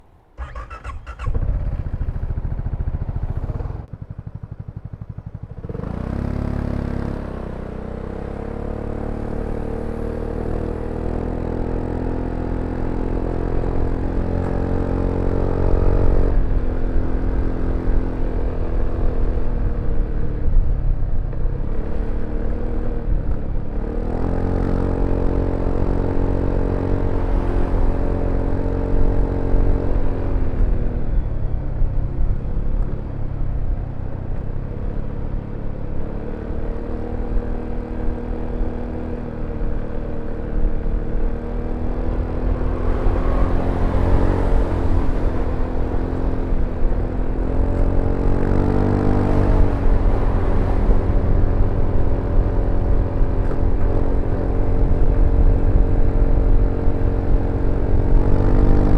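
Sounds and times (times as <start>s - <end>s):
scooter engine running: 0.3s - 6.5s.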